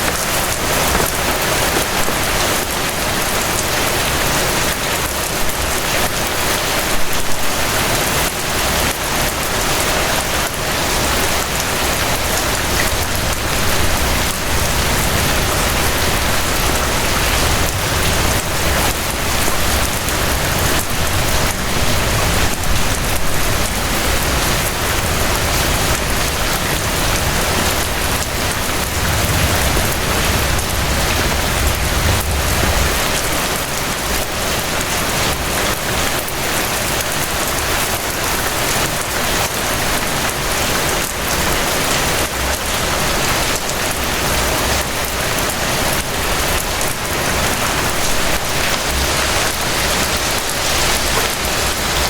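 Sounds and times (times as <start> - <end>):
steady rain: 0.0 - 52.0
low rumble: 13.0 - 33.5.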